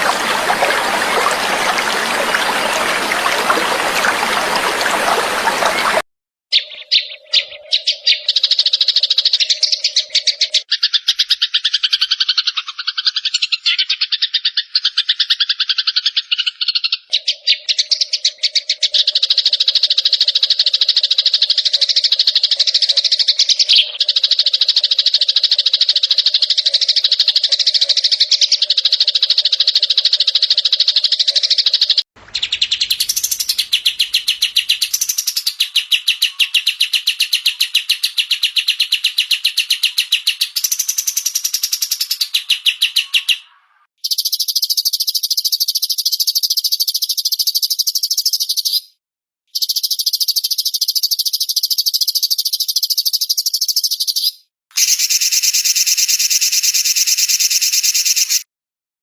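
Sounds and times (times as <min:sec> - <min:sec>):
songbirds chirping trills: 0:00.0 - 0:11.2.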